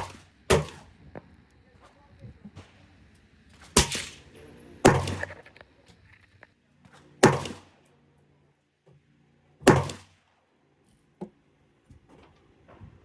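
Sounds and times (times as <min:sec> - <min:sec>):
rifle shots with echo: 0:03.8 - 0:05.4.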